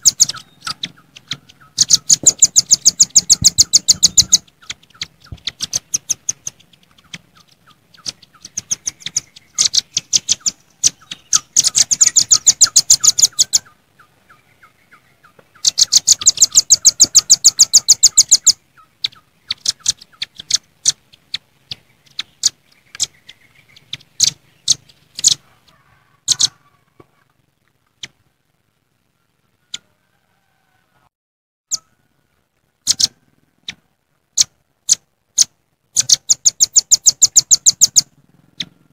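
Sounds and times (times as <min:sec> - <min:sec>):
nuthatches chipping: 0:00.0 - 0:27.1, 0:32.8 - 0:38.8.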